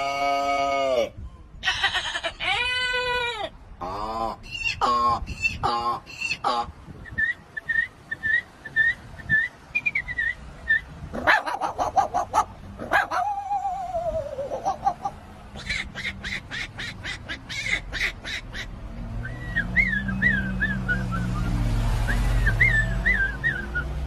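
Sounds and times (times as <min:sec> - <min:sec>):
man whistling bird-like chirps: 0:07.0 - 0:10.9, 0:19.2 - 0:24.0.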